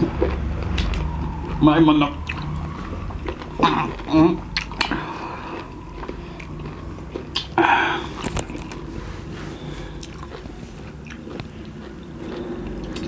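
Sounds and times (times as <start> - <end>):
people chewing lemon: 0.0 - 13.0.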